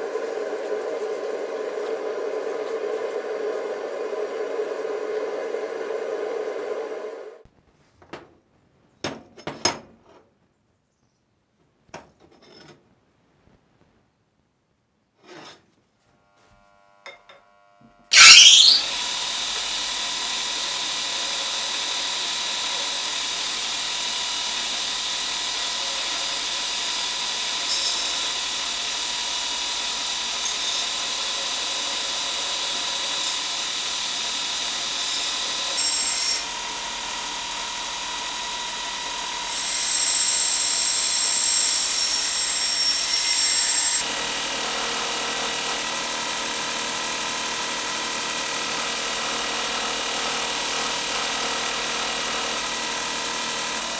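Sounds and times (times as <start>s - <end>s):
power tool whining and grinding: 16.2s - 53.9s.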